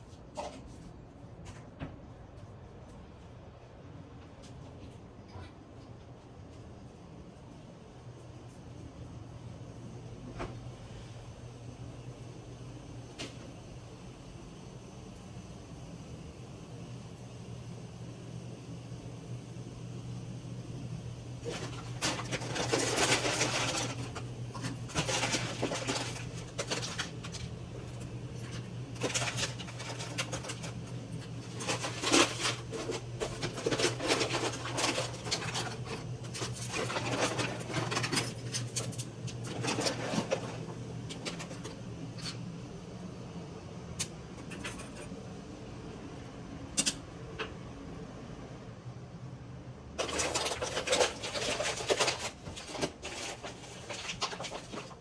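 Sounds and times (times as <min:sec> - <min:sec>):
steady low hum: 0:00.0 - 0:55.0
kitchen handling noises: 0:21.4 - 0:42.4.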